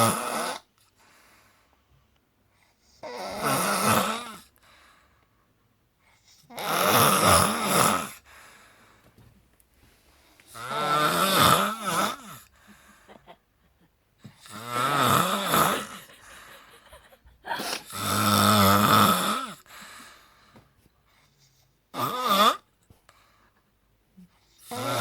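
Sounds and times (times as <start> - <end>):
person snoring loudly: 0.0 - 0.7, 3.0 - 4.5, 6.5 - 8.2, 10.5 - 12.5, 14.4 - 16.1, 17.7 - 19.7, 22.0 - 22.6, 24.7 - 25.0.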